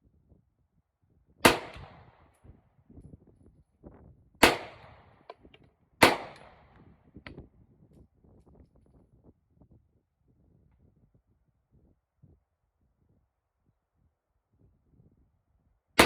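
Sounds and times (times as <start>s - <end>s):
pistol shots echoing: 1.4s - 2.0s, 4.4s - 5.1s, 6.0s - 6.6s.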